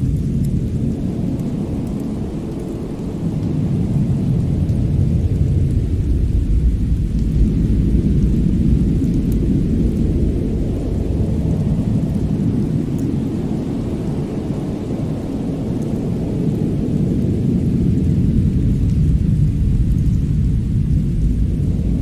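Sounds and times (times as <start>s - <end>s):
fire crackling: 0.0s - 22.0s
fireplace low rumble: 0.0s - 22.0s.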